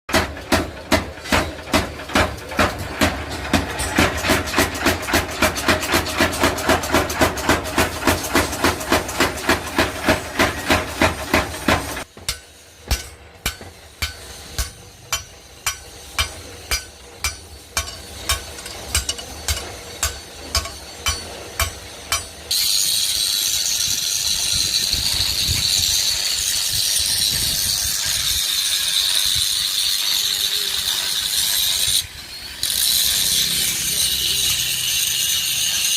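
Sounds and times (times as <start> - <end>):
hammer striking iron: 0.1 - 23.0.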